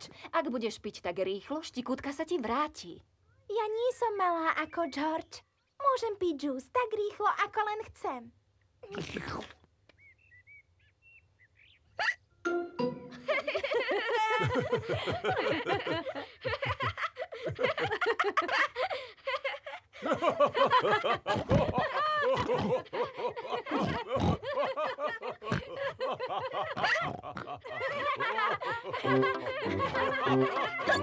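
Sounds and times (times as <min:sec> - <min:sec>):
cartoon voices laughing: 0:13.2 - 0:31.0.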